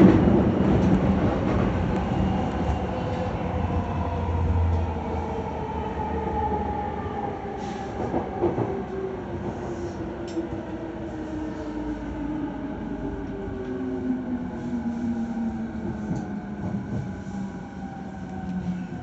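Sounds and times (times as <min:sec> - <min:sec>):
train car rumble: 0:00.0 - 0:06.6.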